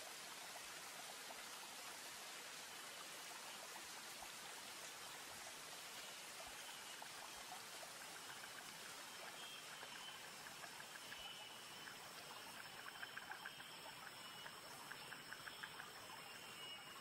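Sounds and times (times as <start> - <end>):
faint steady hiss: 0.0 - 17.0.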